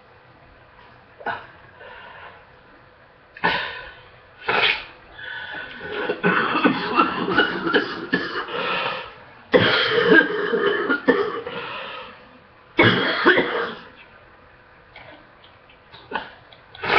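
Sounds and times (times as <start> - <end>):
person coughing: 3.4 - 3.9, 5.8 - 8.6, 9.5 - 11.6, 12.8 - 14.0.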